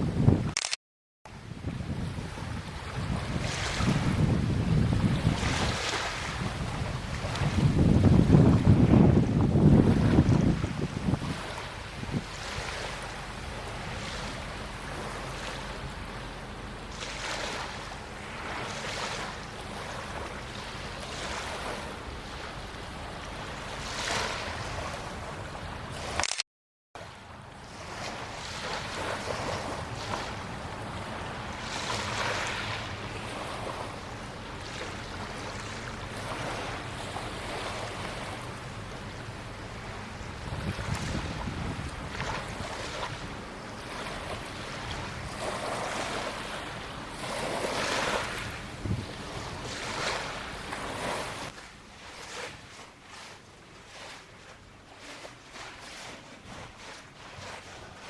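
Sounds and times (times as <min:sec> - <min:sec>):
wind on microphone: 0:00.0 - 0:00.6, 0:01.3 - 0:15.9, 0:27.7 - 0:52.8
waves washing against shore: 0:01.3 - 0:26.3, 0:27.0 - 0:58.0.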